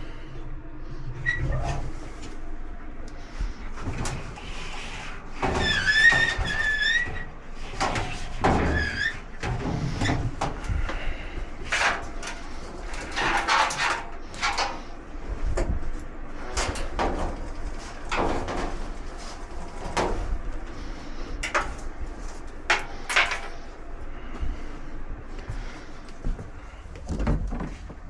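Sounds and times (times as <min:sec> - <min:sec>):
metal panels knocking and clattering: 0:03.8 - 0:15.8, 0:16.4 - 0:20.4, 0:21.4 - 0:23.7.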